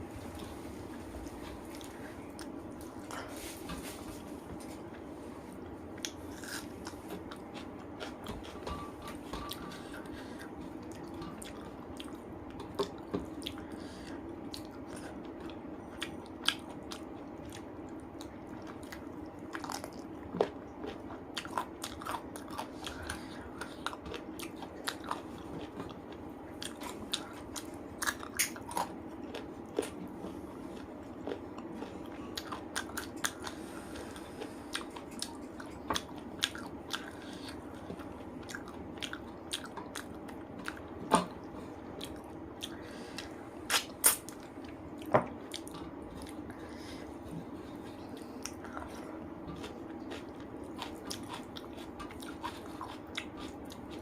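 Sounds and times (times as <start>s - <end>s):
steady low hum: 0.0s - 54.0s
person chewing with wet smacks: 0.3s - 54.0s.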